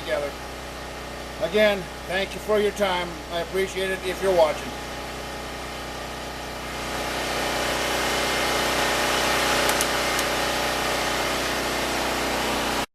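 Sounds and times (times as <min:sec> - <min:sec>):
generator engine running: 0:00.0 - 0:12.9.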